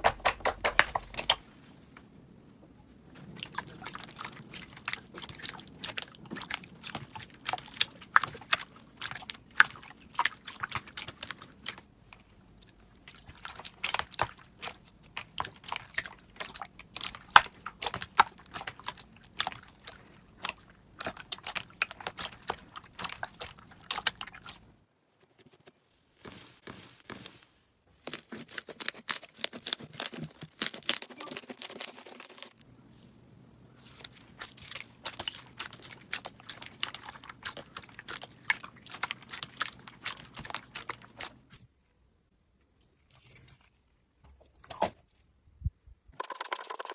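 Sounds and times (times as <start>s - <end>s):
slime squishing with crackling pops: 0.0s - 1.5s, 3.2s - 24.8s, 33.8s - 41.6s.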